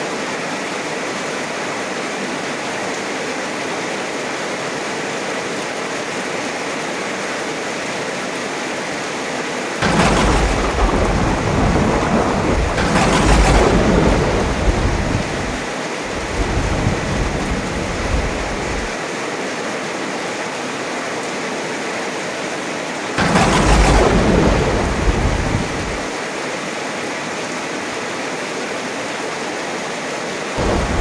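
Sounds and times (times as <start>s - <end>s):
heavy rain: 0.0s - 31.0s
thunder clap and rumble: 9.8s - 19.0s, 23.2s - 26.2s, 30.6s - 31.0s.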